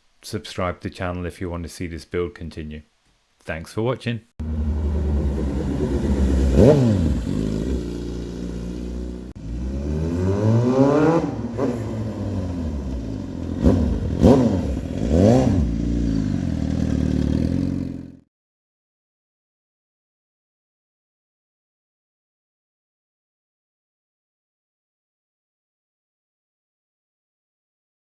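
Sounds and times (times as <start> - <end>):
motorcycle engine revving: 4.4 - 18.2.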